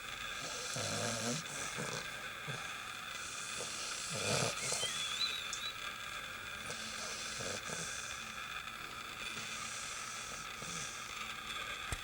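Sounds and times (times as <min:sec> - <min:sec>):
puppy snoring: 0:00.3 - 0:05.3, 0:06.6 - 0:08.6, 0:09.2 - 0:11.3
faint high wavering whistle: 0:04.4 - 0:05.8.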